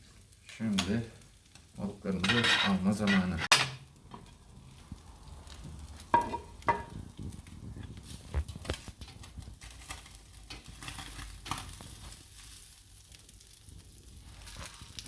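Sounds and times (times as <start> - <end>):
fish sizzling: 0.0 - 15.0
metal utensils clinking on grill: 2.1 - 4.3.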